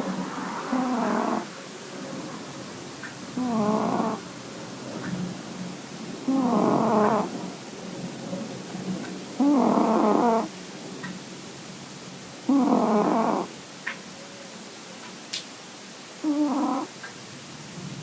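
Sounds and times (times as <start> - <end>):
cat snoring: 0.0 - 1.6, 3.4 - 4.2, 6.2 - 7.3, 9.4 - 10.5, 12.5 - 13.5, 16.2 - 16.9
quiet breathing hum: 0.0 - 11.1, 12.0 - 13.7, 16.0 - 17.1.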